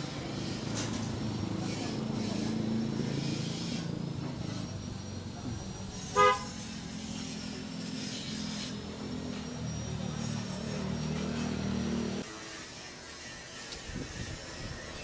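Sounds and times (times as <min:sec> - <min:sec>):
vehicle engine running: 0:00.0 - 0:07.9, 0:08.8 - 0:12.2
vehicle horn beep: 0:06.1 - 0:06.6.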